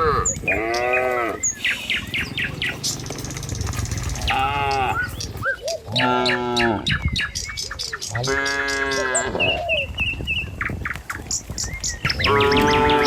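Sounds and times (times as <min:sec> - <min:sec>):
cattle mooing: 0:00.0 - 0:03.0, 0:04.2 - 0:05.2, 0:05.9 - 0:06.8, 0:12.2 - 0:13.0
bird chirping: 0:00.0 - 0:13.0.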